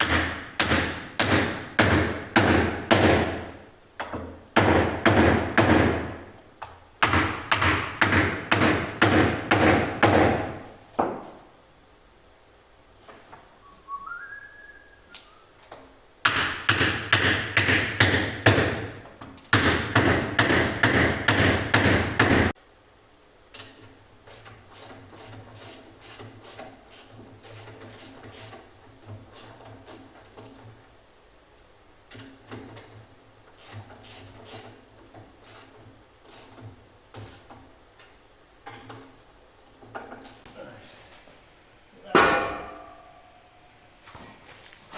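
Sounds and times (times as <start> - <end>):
short rising whistle: 13.6 - 15.6.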